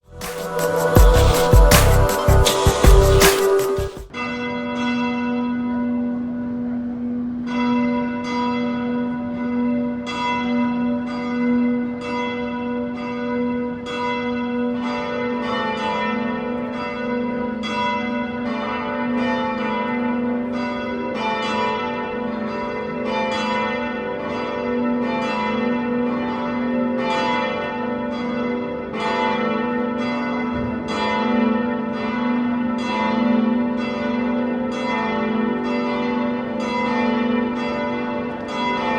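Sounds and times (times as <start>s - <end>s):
church bells ringing: 0.0s - 38.9s.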